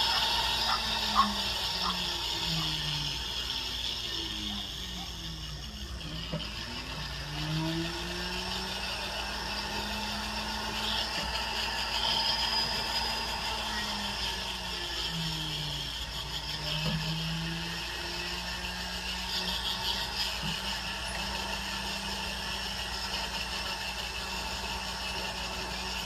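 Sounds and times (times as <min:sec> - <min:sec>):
abrasive hissing on metal: 0:00.0 - 0:07.7
rotary tool whirring: 0:00.0 - 0:26.0.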